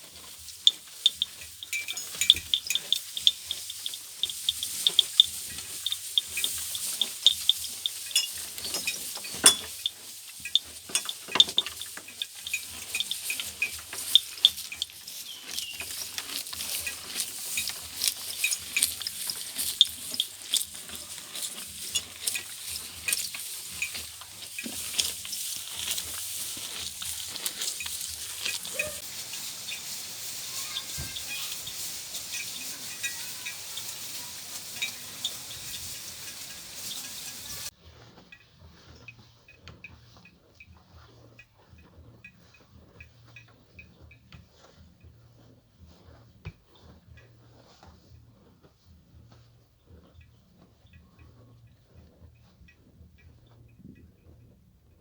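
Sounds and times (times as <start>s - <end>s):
grass stems snapping and rustling: 1.0s - 37.6s.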